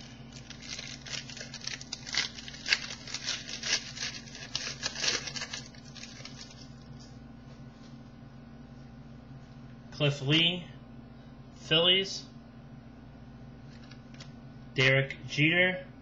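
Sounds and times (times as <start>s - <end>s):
cards and packaging crinkling: 0.0s - 6.9s.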